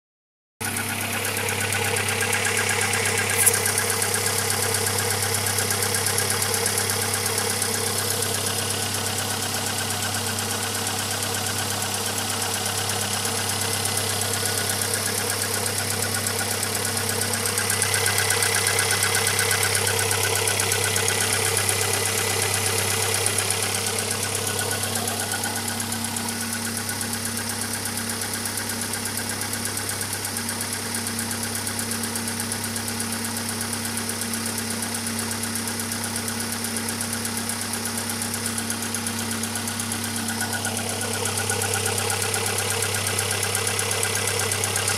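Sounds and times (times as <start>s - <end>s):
car engine running: 0.6s - 44.9s
sharp click: 3.2s - 3.8s.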